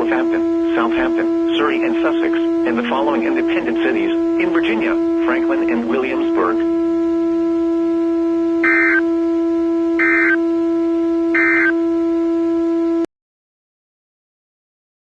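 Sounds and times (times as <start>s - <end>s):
steady low drone: 0.0s - 12.3s
buzzy digital data bursts: 8.6s - 9.2s, 10.0s - 10.6s, 11.3s - 11.9s.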